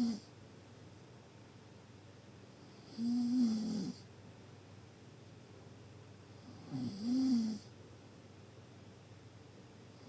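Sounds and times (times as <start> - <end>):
deep snore: 0.0 - 0.3, 2.8 - 4.0, 6.4 - 7.7
faint background noise: 0.0 - 10.0.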